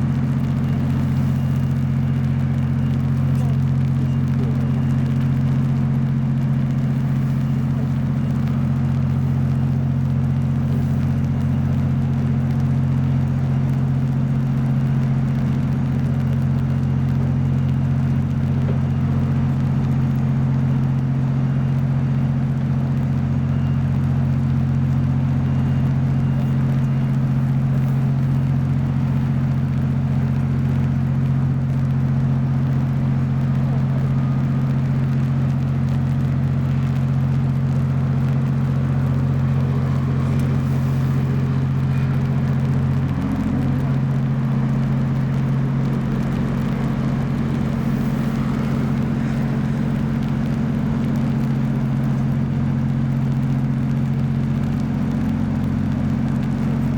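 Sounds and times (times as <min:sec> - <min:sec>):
low engine hum: 0:00.0 - 0:56.9.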